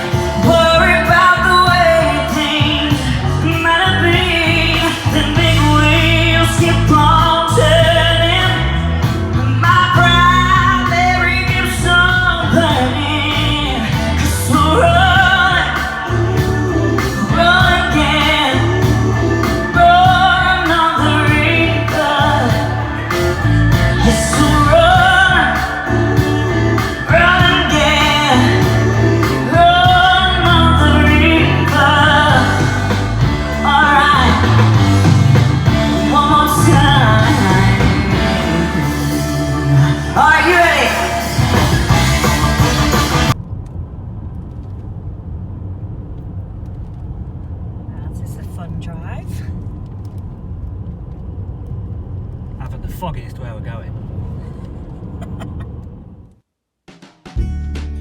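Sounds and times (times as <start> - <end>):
person singing: 0.0 - 43.3
backing track with heavy bass: 0.0 - 43.4, 52.6 - 55.9, 57.3 - 58.0.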